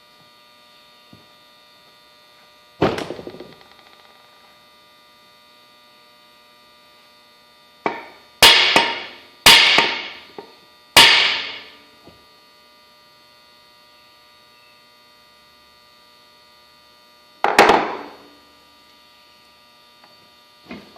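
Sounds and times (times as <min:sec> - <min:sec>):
electrical hum: 0:00.0 - 0:20.9
sharp ringing knocks: 0:07.9 - 0:10.2, 0:11.0 - 0:11.7.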